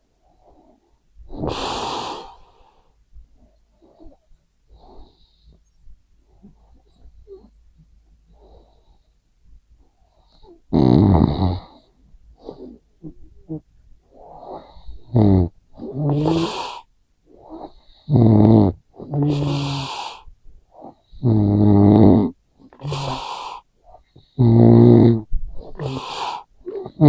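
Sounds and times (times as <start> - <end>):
hissing breath: 1.4 - 3.0, 25.8 - 26.5
snuffles and snorts: 14.2 - 16.8
person snoring loudly: 15.2 - 16.8, 18.1 - 20.2, 21.2 - 23.6, 24.4 - 25.2, 25.8 - 27.0.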